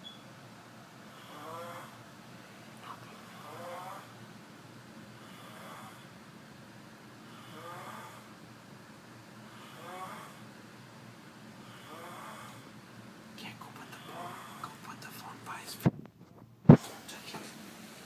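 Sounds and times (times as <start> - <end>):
person snoring: 1.1 - 2.0, 3.2 - 4.1, 5.2 - 6.1, 7.3 - 8.3, 9.5 - 10.4, 11.6 - 12.7, 13.9 - 14.8.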